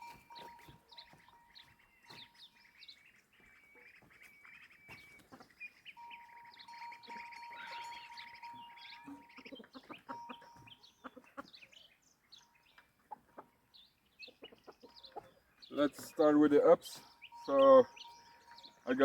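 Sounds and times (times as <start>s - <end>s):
small birds chirping and trilling: 0.0s - 19.0s.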